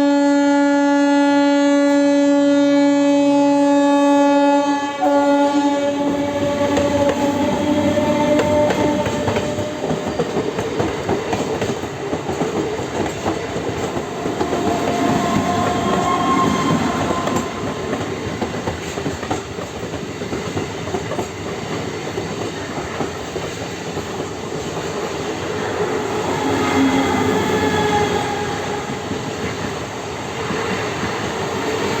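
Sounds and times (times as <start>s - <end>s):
train horn: 0.0s - 10.6s, 13.8s - 18.7s, 25.3s - 29.6s
train clattering on rails: 5.9s - 32.0s
faint squealing: 14.5s - 17.9s.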